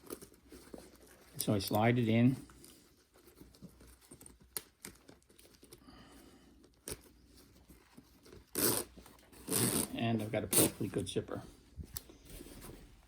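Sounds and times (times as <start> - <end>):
zipper rasp: 8.4 - 10.8.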